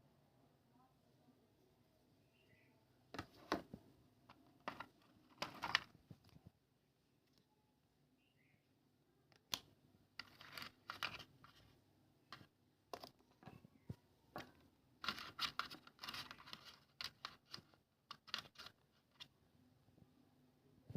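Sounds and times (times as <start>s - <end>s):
hands scraping packaging: 10.2s - 11.6s, 15.0s - 19.2s
packaging rustling: 15.0s - 19.2s.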